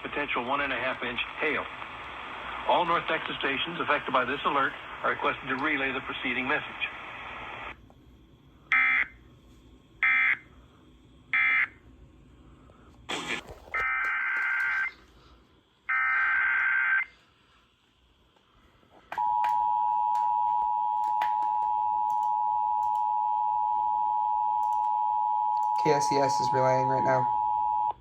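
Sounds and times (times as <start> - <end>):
click: 24.6 - 24.9.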